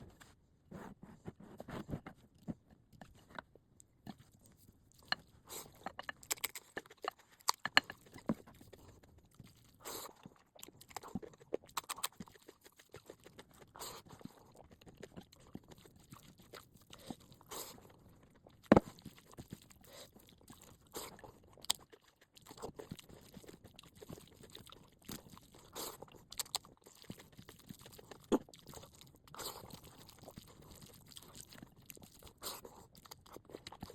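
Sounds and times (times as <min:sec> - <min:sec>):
chewing with wet mouth clicks: 0:02.9 - 0:33.9.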